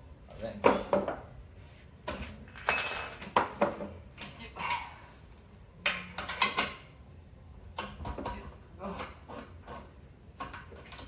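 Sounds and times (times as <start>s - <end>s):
metal clinking and clanking: 2.5s - 3.6s.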